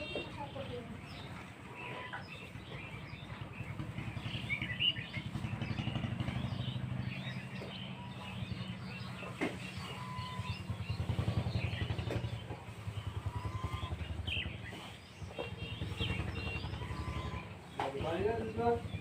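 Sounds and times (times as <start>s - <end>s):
engine running: 0.0s - 19.0s
small birds chirping: 0.0s - 19.0s.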